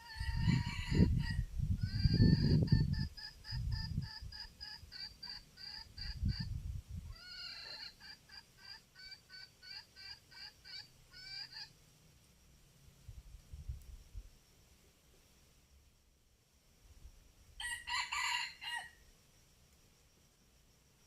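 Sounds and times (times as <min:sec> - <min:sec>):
wind rumble on microphone: 0:00.0 - 0:04.5, 0:05.9 - 0:07.2, 0:13.0 - 0:14.4
fowl calling rapid repeated notes: 0:01.9 - 0:06.5, 0:07.2 - 0:11.7.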